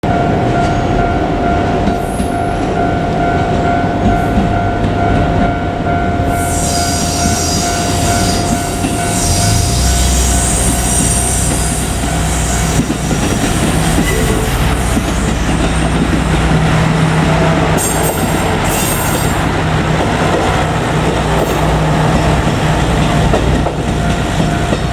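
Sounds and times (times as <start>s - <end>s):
diesel railcar whine: 0.0s - 24.9s
deep low rumble: 8.8s - 13.2s.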